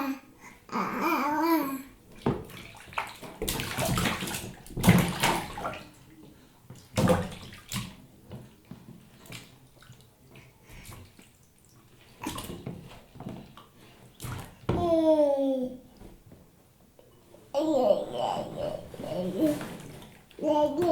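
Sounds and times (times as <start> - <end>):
baby splashing bathwater: 2.1 - 15.2, 17.6 - 20.9.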